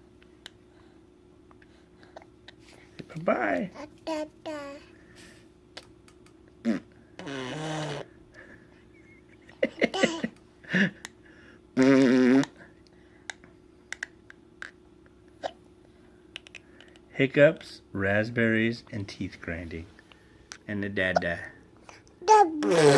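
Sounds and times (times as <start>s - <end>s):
baby babbling: 3.7s - 4.9s, 22.2s - 22.9s
baby blowing raspberry: 6.6s - 8.1s, 11.8s - 12.6s, 22.4s - 22.9s.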